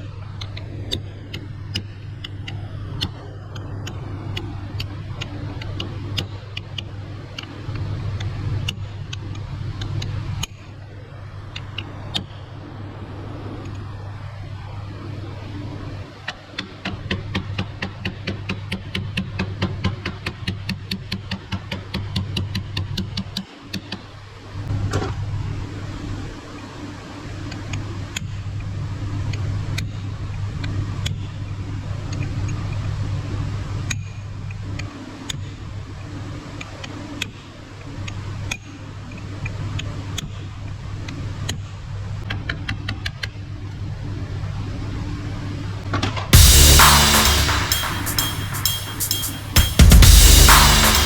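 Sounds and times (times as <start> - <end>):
steady low hum: 46.4 - 51.0.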